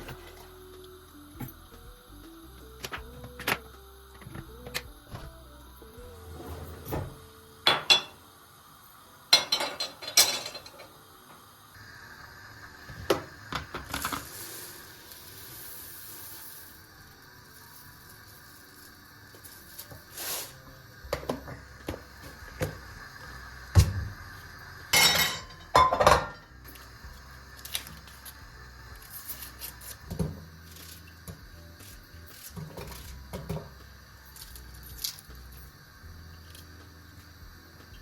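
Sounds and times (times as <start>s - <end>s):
dishes and cutlery clinking: 6.6s - 8.2s, 9.3s - 10.9s, 24.9s - 26.5s.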